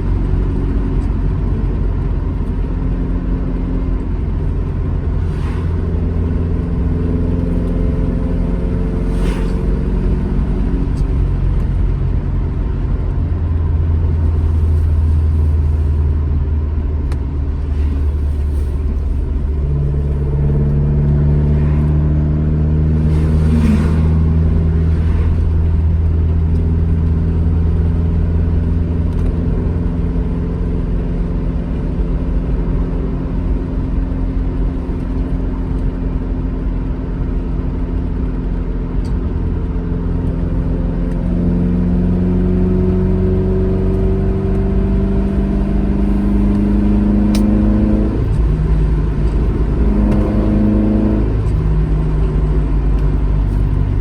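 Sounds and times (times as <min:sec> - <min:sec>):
car engine under load: 0:00.0 - 0:54.0
rush of noise: 0:03.6 - 0:12.6, 0:13.9 - 0:27.4.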